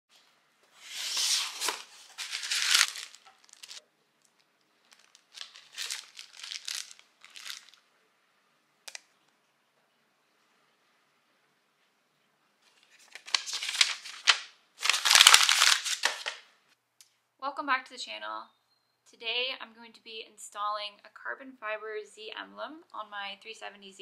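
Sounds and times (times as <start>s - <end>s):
crinkling and tearing: 0.8s - 7.8s, 12.7s - 16.4s.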